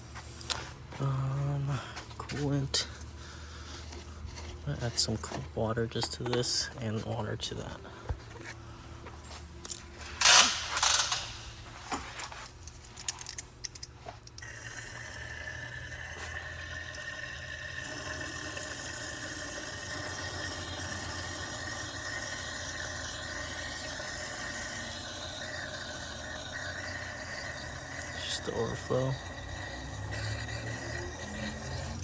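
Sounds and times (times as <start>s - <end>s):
knocks and handling clatter: 3.8s - 14.4s
water pouring into reservoir: 14.4s - 32.0s.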